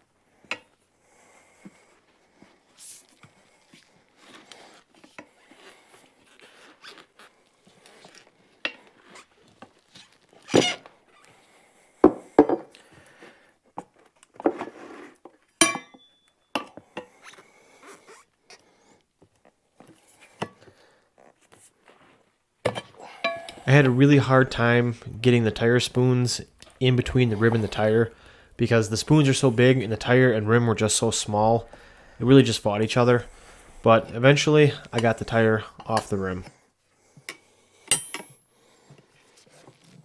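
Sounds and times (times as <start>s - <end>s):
tire spoons scraping on rim: 23.1s - 36.5s
metallic ring: 23.2s - 23.7s, 37.9s - 38.5s.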